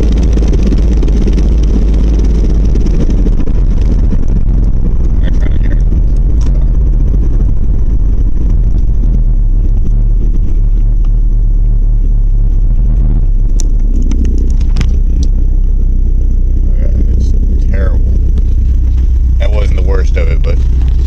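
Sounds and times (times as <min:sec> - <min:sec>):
car driveshaft rumble and rattle: 0:00.0 - 0:21.0
sharp clicks: 0:13.5 - 0:15.4.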